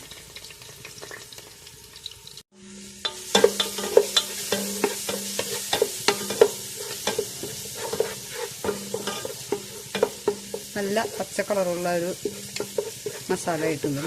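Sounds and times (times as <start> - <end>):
paste sizzling in oil: 0.0 - 14.0
utensil knocking against pan: 3.0 - 11.4, 12.2 - 13.3.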